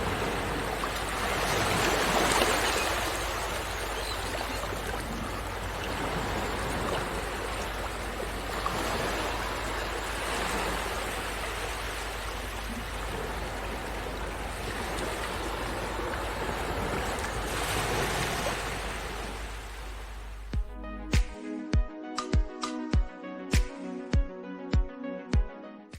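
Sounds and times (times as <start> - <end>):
waves breaking on shore: 0.0 - 20.6.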